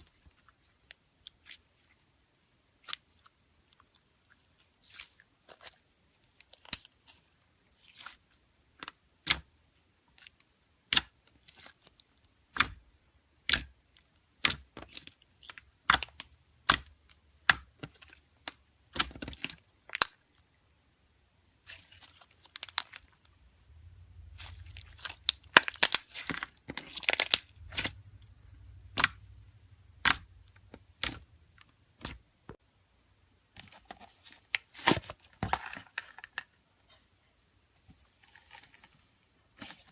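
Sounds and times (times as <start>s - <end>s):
slime popping and crackling: 24.1s - 32.4s.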